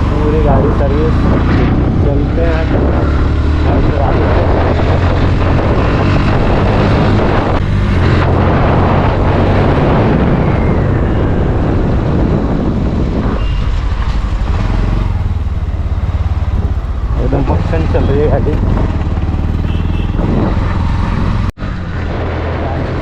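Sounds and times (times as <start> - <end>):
wind rush: 0.0 - 17.8, 18.4 - 23.0
motorcycle engine running: 13.6 - 21.5.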